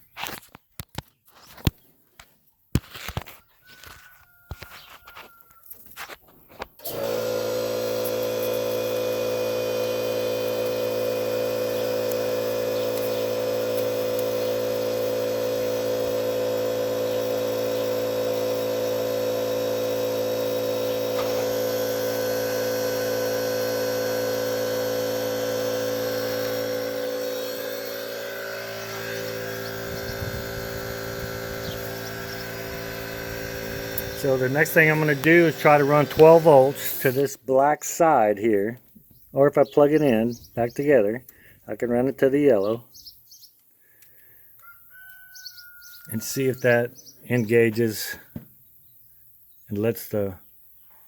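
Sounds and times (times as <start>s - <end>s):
steady multi-pitch hum: 7.7s - 37.2s.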